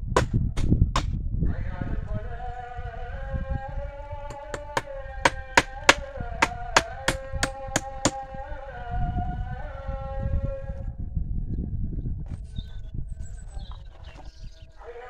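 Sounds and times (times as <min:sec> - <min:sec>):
sharp clicks or knocks: 0:04.3 - 0:08.2.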